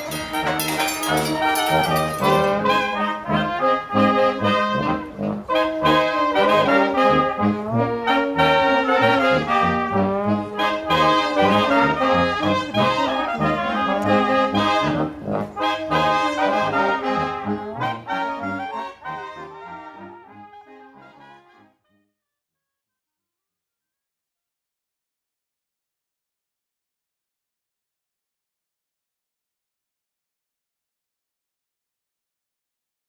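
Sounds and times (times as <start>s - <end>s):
live band with brass: 0.0s - 21.8s.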